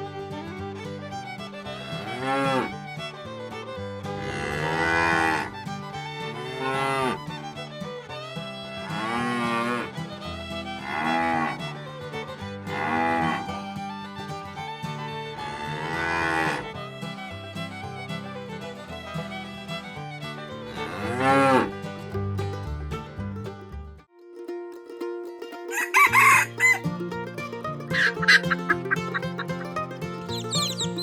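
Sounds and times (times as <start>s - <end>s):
cows mooing: 4.2s - 5.5s, 10.8s - 11.6s, 12.7s - 13.4s, 15.5s - 16.6s.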